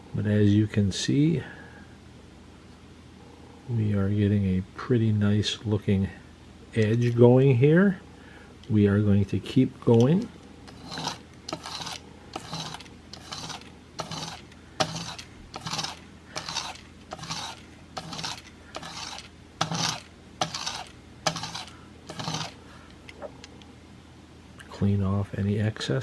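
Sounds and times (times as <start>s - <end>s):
blade scraping on cardboard: 10.7s - 22.6s.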